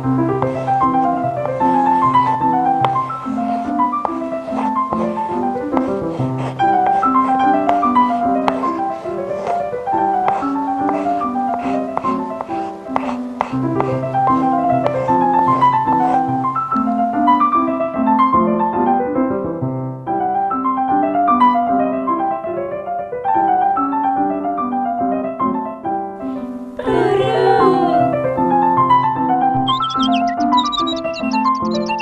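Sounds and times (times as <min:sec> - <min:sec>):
piano music: 0:00.0 - 0:32.0
wavering warbling sound: 0:29.6 - 0:32.0.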